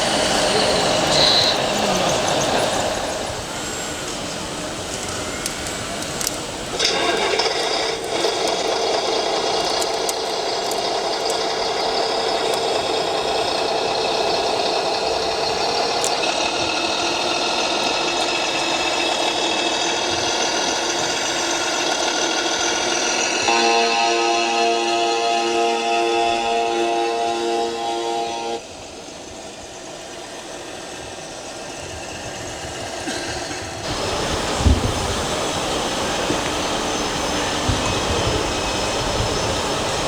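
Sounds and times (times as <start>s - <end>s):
model truck motor whirring: 0.0s - 28.6s
light rattling and clicks: 0.3s - 23.4s.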